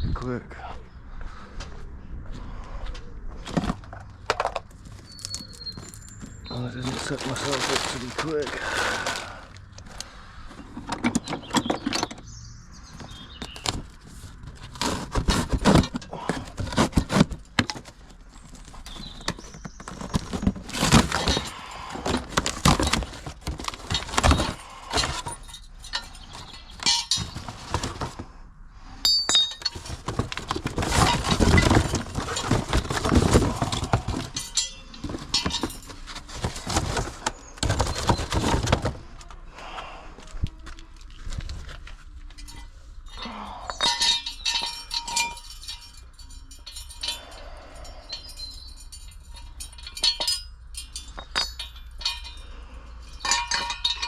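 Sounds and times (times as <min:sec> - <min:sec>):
metal clanking and rattling: 0:13.1 - 0:18.1, 0:18.7 - 0:28.3, 0:29.1 - 0:39.2, 0:41.7 - 0:54.0.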